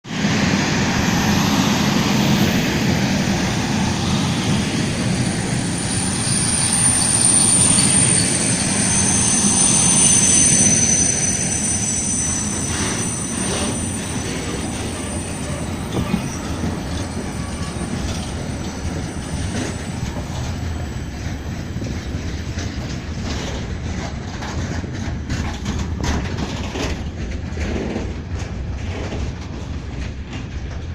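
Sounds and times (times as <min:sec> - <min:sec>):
train brakes squealing: 0:00.2 - 0:27.0
wagons rumbling: 0:00.7 - 0:30.8
wheels clacking over rail joints: 0:12.4 - 0:30.9.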